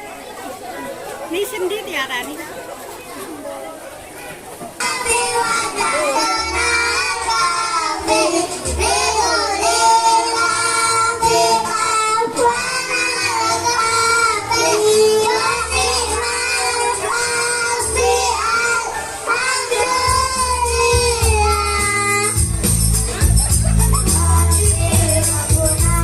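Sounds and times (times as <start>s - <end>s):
child singing: 4.8s - 22.5s, 23.8s - 26.0s
instrumental accompaniment with deep bass: 19.7s - 26.0s.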